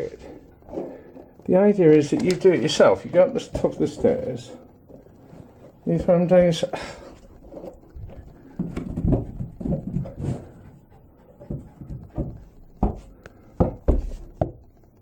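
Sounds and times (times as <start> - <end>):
ball bouncing down stairs: 7.4 - 15.0.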